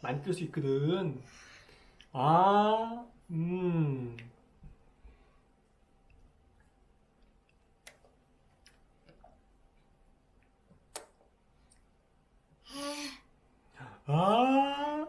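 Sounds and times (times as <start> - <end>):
person saying ah: 13.9 - 15.0.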